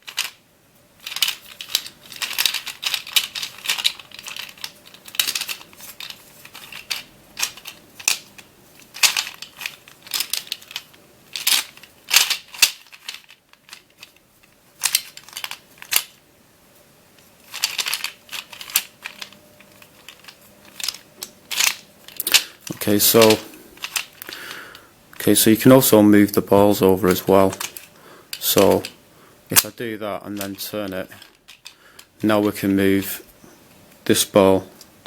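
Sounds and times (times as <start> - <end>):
plastic puzzle balls rattling: 0.0 - 0.4, 1.0 - 16.2, 17.4 - 24.7, 26.9 - 29.6, 30.3 - 32.7.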